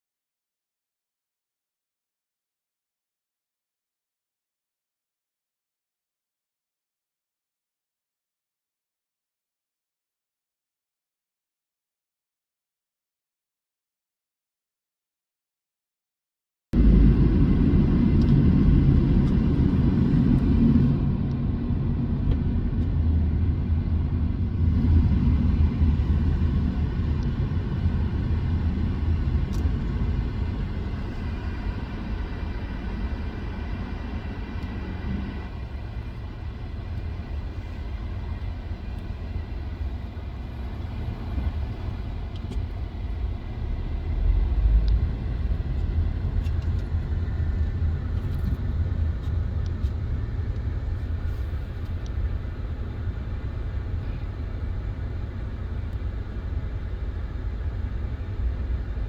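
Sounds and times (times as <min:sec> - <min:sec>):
car road and engine rumble: 0:16.8 - 0:59.0.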